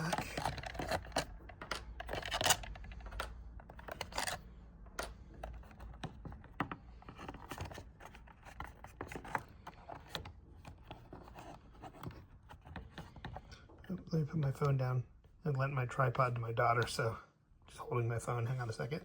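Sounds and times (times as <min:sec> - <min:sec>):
screwdriver scraping plastic case: 0:00.0 - 0:04.4, 0:05.0 - 0:13.5
plastic case being handled: 0:00.0 - 0:13.8.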